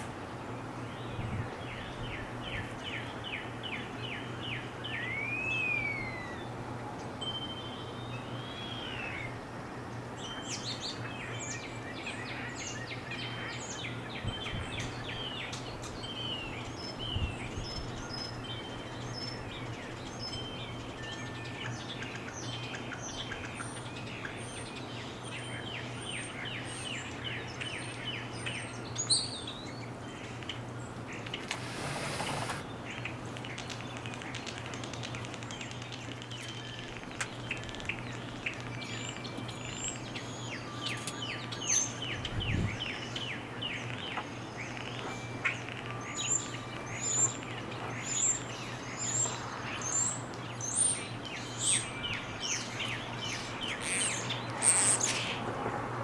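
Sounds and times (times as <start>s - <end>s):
songbirds singing and chirping: 0.0s - 56.0s.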